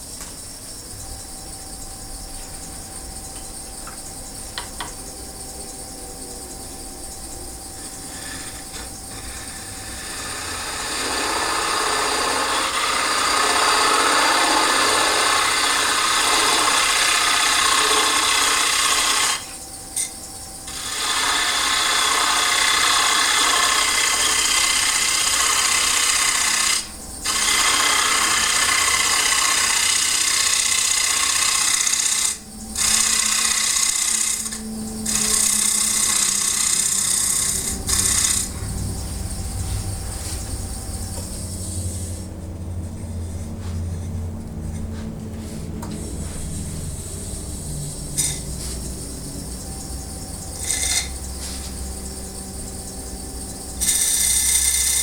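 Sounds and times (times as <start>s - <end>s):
lathe tool cutting wood hiss: 7.7s - 42.4s, 45.9s - 55.0s.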